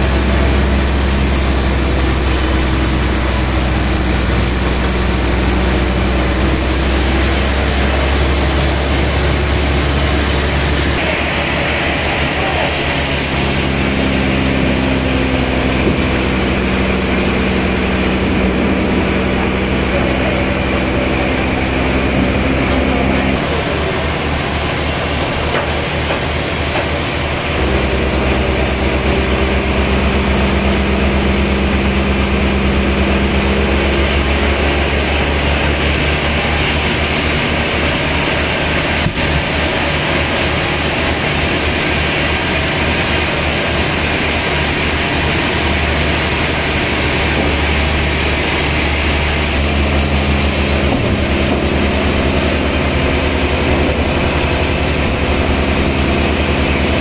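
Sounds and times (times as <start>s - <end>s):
sawmill machinery droning: 0.0s - 57.0s.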